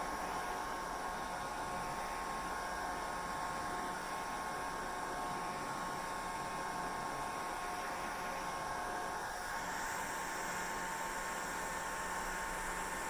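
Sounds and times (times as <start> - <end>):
hair dryer running: 8.6 - 13.0.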